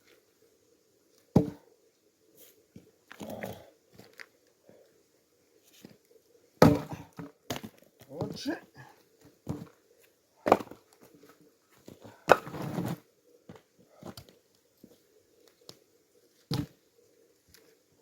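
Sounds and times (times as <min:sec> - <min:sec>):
axe splitting wood: 0:06.6 - 0:07.6, 0:10.4 - 0:10.8, 0:12.3 - 0:12.9.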